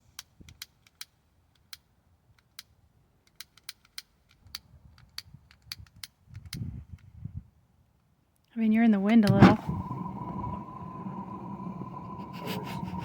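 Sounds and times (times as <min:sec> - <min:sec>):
wind rumble on microphone: 0:04.4 - 0:07.6, 0:09.2 - 0:13.0.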